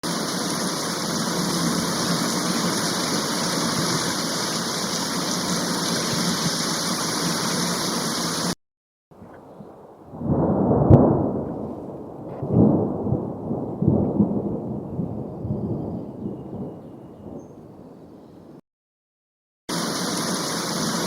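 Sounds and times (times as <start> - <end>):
thunder rumbling: 9.2 - 18.0
thunder crack: 9.9 - 16.7.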